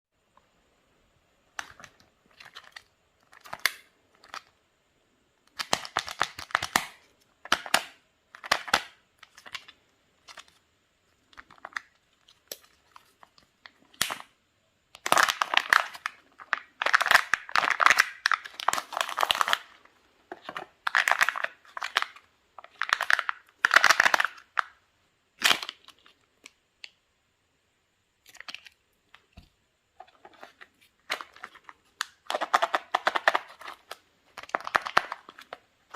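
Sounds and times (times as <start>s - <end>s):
foil wrapper crinkling and tearing: 31.1s - 35.5s.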